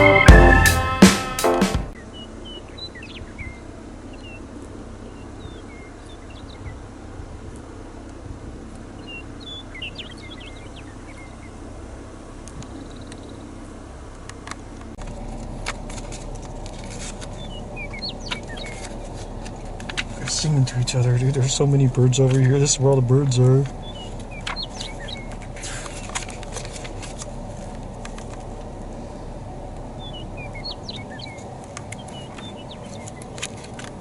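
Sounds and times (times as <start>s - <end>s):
keyboard music with chords: 0.0s - 2.0s
small birds singing: 1.9s - 7.2s, 7.9s - 14.8s, 16.0s - 34.0s
low background rumble: 1.9s - 34.0s
outdoor background noise: 1.9s - 34.0s
high bird chirps: 17.4s - 18.9s, 23.7s - 26.2s, 30.0s - 33.3s.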